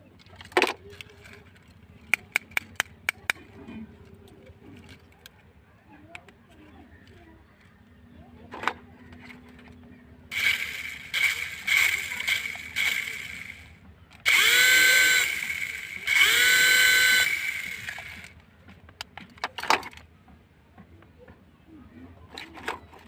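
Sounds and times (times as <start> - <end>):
small electric motor whirring: 10.3 - 18.4.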